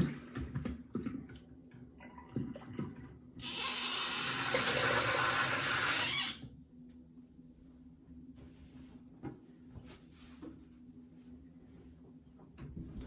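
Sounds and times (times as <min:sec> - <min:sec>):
sink tap running: 0:03.4 - 0:06.4.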